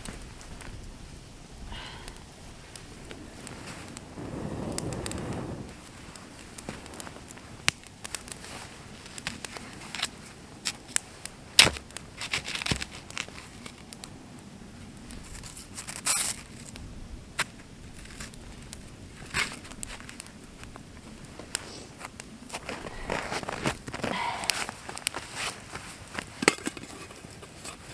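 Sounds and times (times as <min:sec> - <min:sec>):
campfire crackling and popping: 0:00.0 - 0:27.9
short soft rush: 0:02.5 - 0:06.9.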